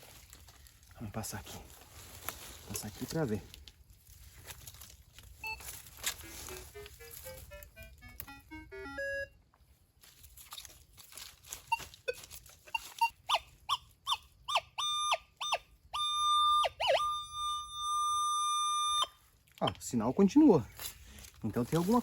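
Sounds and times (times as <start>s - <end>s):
metal detector beeps and tones: 5.4s - 9.4s, 11.7s - 19.8s.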